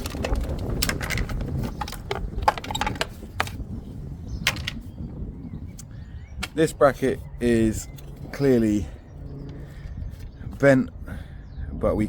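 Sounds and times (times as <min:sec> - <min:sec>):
debris clicks knocks and rattles: 0:00.0 - 0:03.7, 0:04.4 - 0:04.8.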